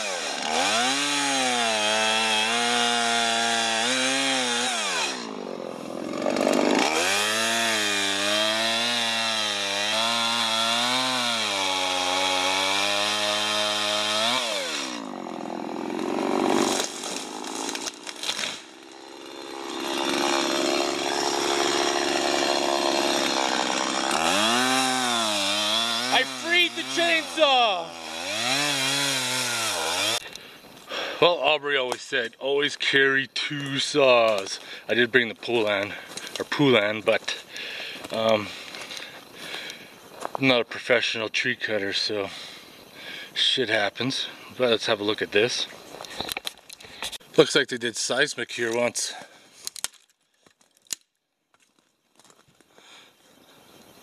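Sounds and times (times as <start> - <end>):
chainsaw revving: 0.0 - 31.1.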